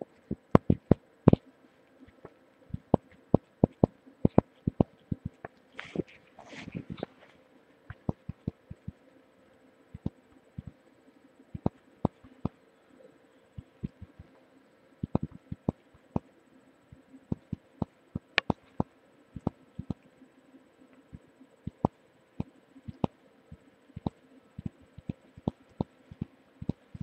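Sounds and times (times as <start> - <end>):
faint steady hum: 0.0 - 27.0
sharp clicks and taps: 0.3 - 1.4, 7.9 - 9.0, 11.6 - 12.6, 15.0 - 16.3, 18.2 - 20.0, 21.1 - 27.0.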